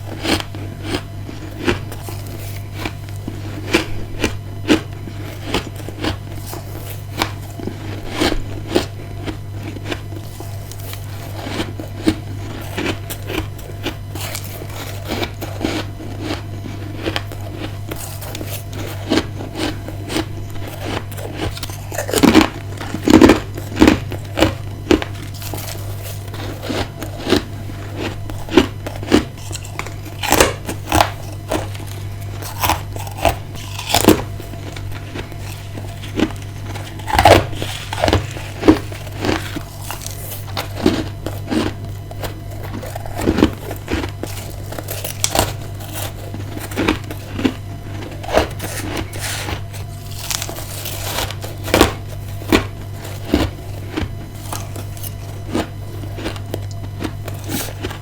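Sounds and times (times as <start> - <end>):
constant low hum: 0.0 - 58.0
ice being chewed: 0.0 - 58.0.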